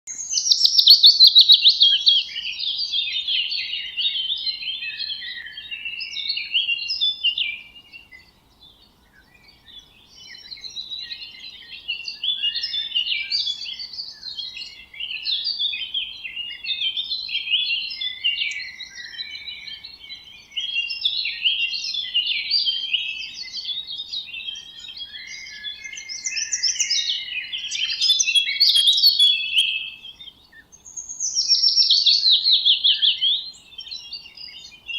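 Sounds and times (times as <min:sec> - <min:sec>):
songbirds chirping and warbling: 0:00.1 - 0:34.9.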